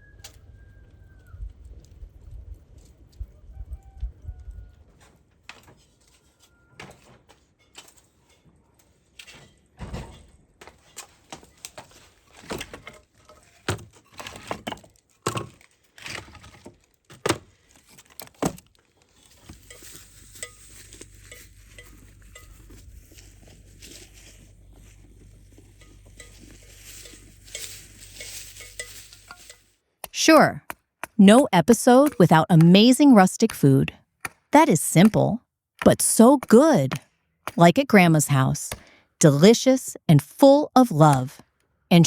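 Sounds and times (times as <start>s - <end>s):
dishes and utensils clinking: 19.3s - 29.7s.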